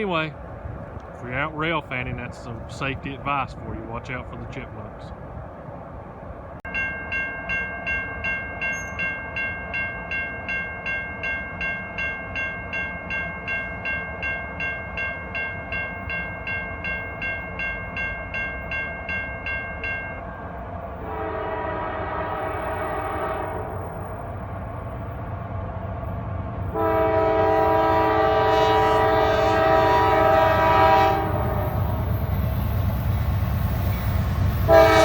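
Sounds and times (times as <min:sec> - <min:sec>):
railroad crossing bell dinging: 0:06.6 - 0:25.3
locomotive horn blast: 0:21.0 - 0:24.0, 0:26.7 - 0:32.0, 0:34.6 - 0:35.0.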